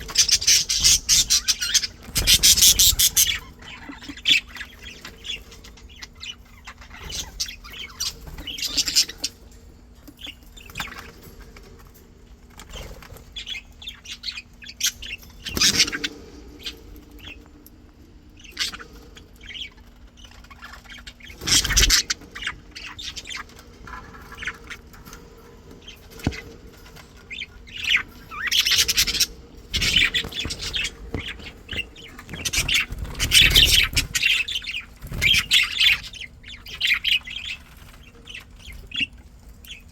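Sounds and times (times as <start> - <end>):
budgerigar squawks: 0.0 - 4.6
budgerigars chirping and chattering: 0.0 - 39.9
faint steady hum: 0.0 - 39.9.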